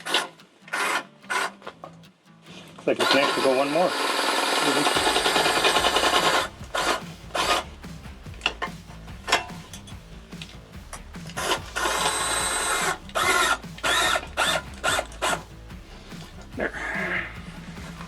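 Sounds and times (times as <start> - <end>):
cordless drill driving jack: 11.3 - 15.4.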